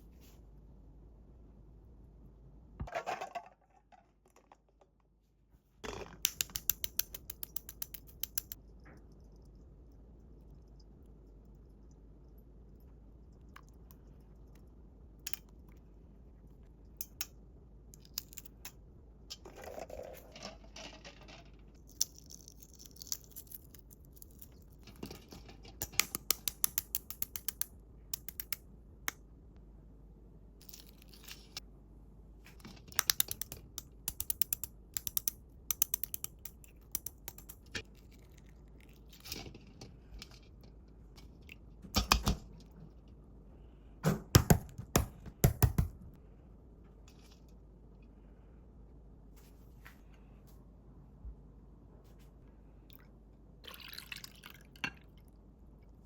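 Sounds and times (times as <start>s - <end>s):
small sharp clicks and taps: 6.2s - 9.0s, 25.8s - 29.2s, 32.7s - 37.8s.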